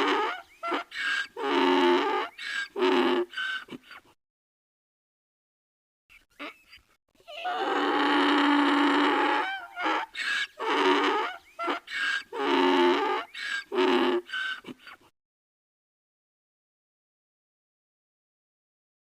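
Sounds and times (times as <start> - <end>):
donkey braying: 0.0 - 4.0, 6.3 - 15.0.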